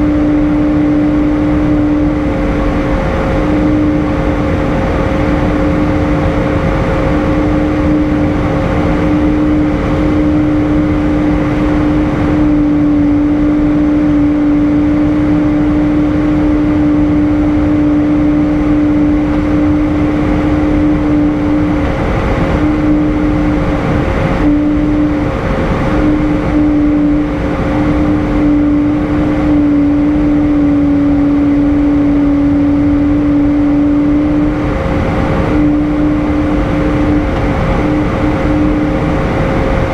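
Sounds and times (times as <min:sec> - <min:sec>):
roar of engines and airflow: 0:00.0 - 0:39.9
steady drone tone: 0:00.0 - 0:39.9.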